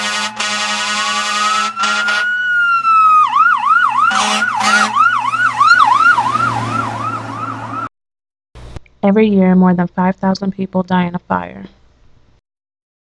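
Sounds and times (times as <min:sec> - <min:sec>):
emergency vehicle siren: 0:00.0 - 0:07.9
siren short blasts: 0:00.0 - 0:07.9.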